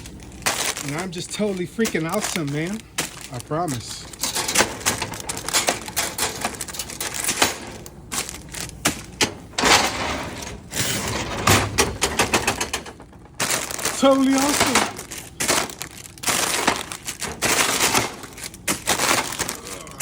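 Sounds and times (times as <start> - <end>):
plastic crinkling: 0.0 - 9.3, 12.6 - 20.0
vending machine clicking and clattering: 0.4 - 20.0.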